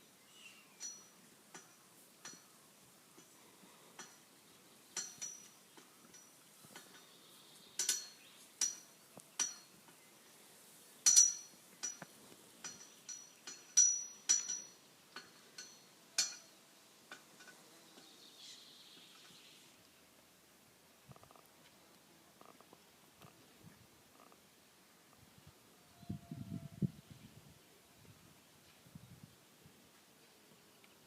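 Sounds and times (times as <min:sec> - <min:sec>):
metal clinking and knocking: 0:05.0 - 0:07.0, 0:07.8 - 0:09.7, 0:11.1 - 0:16.5.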